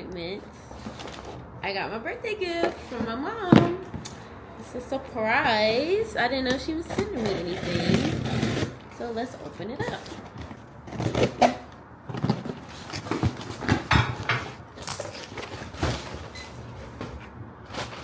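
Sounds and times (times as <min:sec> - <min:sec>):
packaging rustling and scraping: 0:00.5 - 0:01.6, 0:06.6 - 0:18.0.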